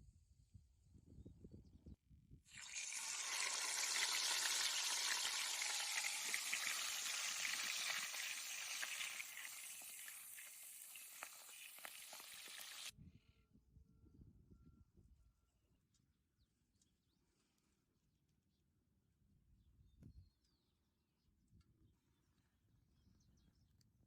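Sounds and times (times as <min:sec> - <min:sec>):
food sizzling in hot oil: 0:02.5 - 0:12.9.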